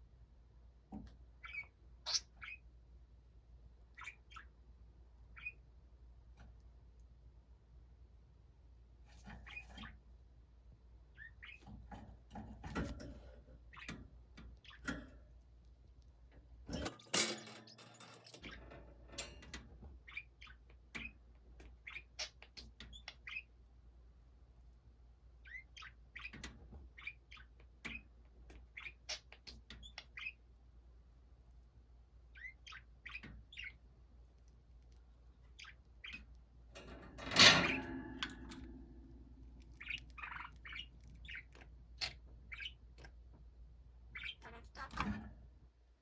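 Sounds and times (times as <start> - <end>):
budgerigars chirping: 1.4 - 2.6, 39.8 - 42.8, 44.1 - 44.6.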